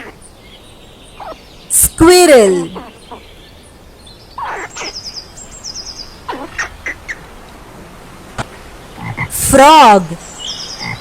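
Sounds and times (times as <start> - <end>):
squirrel chirping: 0.0 - 1.5, 4.4 - 7.3.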